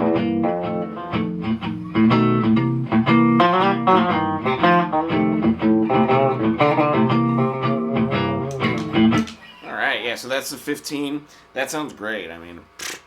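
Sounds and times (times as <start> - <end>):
electric guitar melody: 0.0 - 9.4
looped guitar backing: 0.0 - 11.2.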